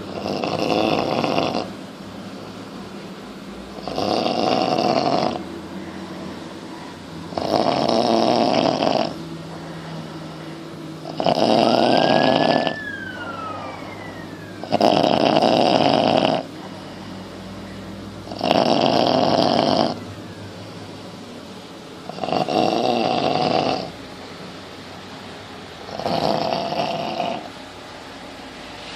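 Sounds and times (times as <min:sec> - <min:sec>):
loud snoring: 0:00.1 - 0:01.7, 0:03.8 - 0:05.5, 0:07.3 - 0:09.2, 0:11.0 - 0:12.8, 0:14.6 - 0:16.5, 0:18.3 - 0:20.0, 0:22.1 - 0:23.9, 0:25.9 - 0:27.5.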